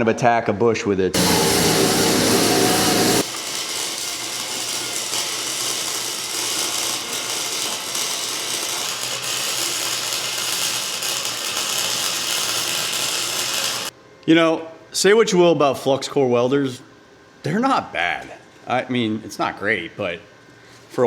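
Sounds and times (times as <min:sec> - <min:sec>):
welding arc crackling: 0:01.2 - 0:13.9.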